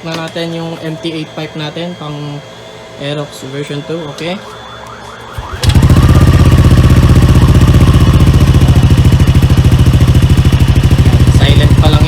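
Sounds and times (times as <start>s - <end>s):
scooter engine starting and idling: 5.3s - 12.0s.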